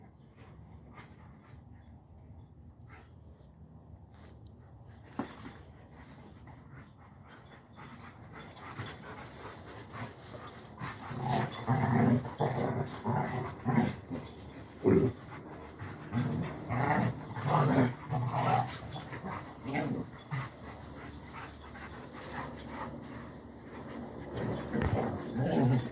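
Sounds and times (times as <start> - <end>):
dogs growling: 7.8 - 25.9.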